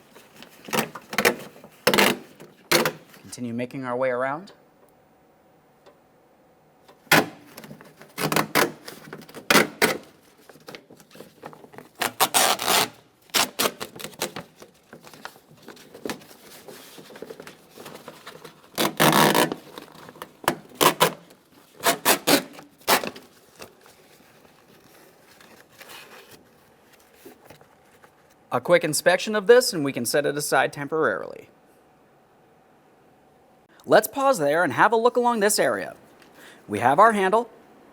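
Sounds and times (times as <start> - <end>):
plastic sheet ripping off sealant: 0.4 - 3.2, 7.0 - 26.3.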